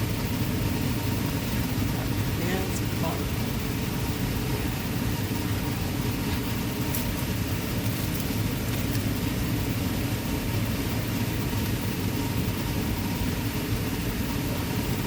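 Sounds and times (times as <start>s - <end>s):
faint thin whine: 0.0s - 15.0s
low mechanical hum: 0.0s - 15.0s.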